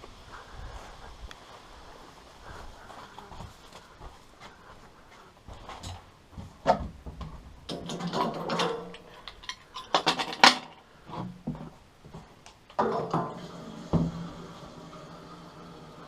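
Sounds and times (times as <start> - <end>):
metal objects clanking and rattling: 7.7 - 10.8.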